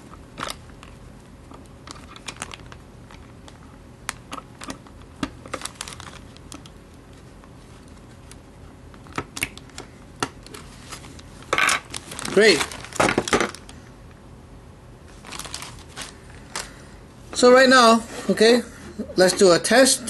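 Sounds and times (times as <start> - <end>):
plastic bag crinkling: 1.8 - 3.3, 5.4 - 6.7, 10.6 - 13.8, 15.1 - 16.8.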